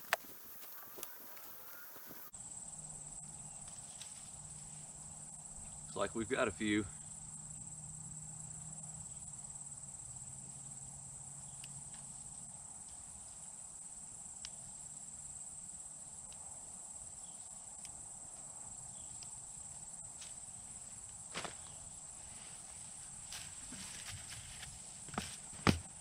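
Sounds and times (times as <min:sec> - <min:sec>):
faint clicks: 0:00.0 - 0:02.3
crickets trilling: 0:00.0 - 0:26.0.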